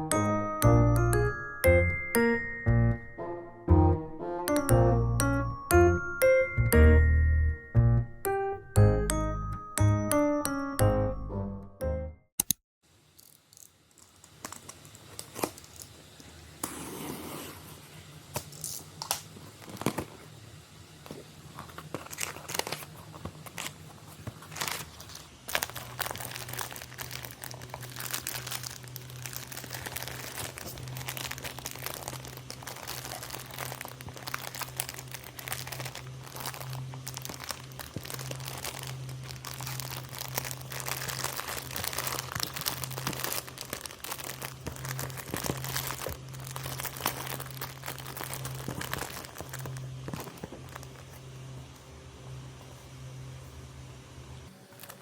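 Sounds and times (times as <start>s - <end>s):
packaging crinkling and tearing: 18.6s - 20.2s, 21.5s - 51.1s, 54.8s - 55.0s.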